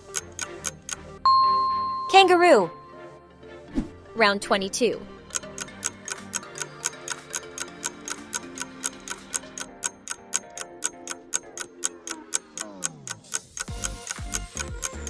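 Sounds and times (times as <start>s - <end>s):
clock ticking: 0.0s - 1.0s, 5.2s - 15.0s
soft background music: 0.0s - 15.0s.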